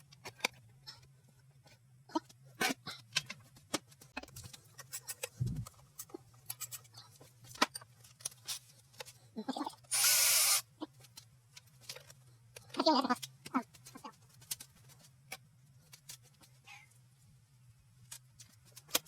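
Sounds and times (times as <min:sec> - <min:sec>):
low hum: 0:05.3 - 0:05.7.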